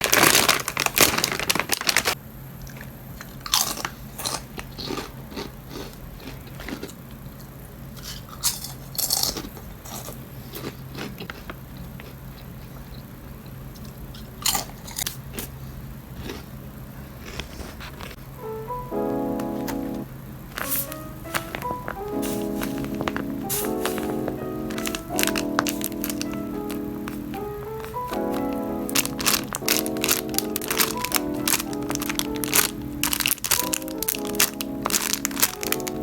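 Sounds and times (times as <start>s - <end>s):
plastic toys crinkling and crackling: 0.0s - 7.0s, 20.5s - 36.0s.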